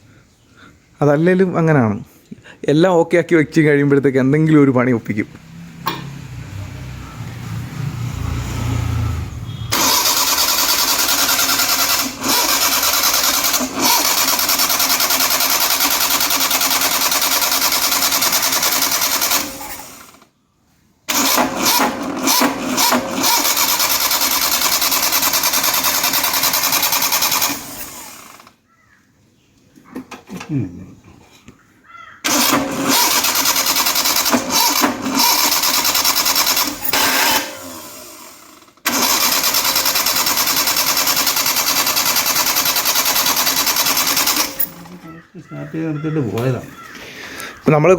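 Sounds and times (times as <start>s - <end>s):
starter motor cranking engine: 5.7s - 20.3s, 21.1s - 28.6s, 32.2s - 45.2s.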